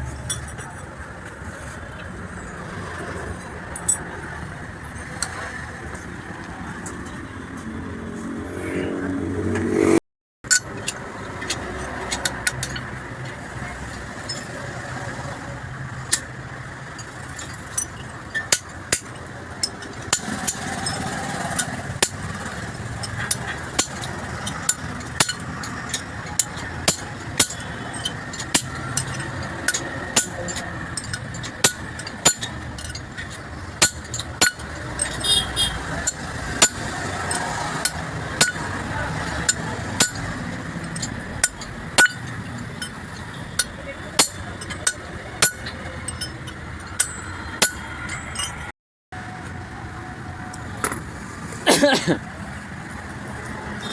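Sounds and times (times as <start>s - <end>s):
vehicles rumbling in background: 0.0s - 53.9s
metallic clicks of tools: 10.5s - 13.4s, 16.9s - 48.7s.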